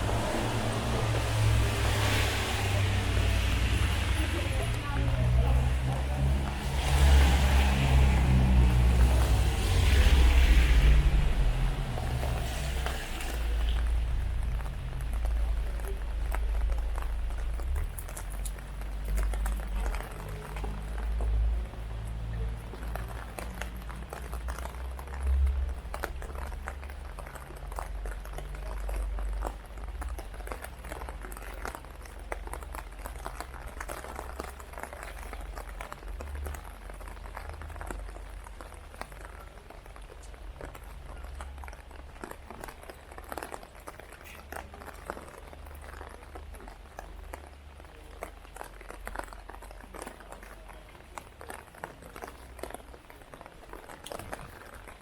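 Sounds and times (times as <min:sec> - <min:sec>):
low rumble: 0:00.0 - 0:22.6
heavy rain on hard surfaces: 0:00.0 - 0:55.0.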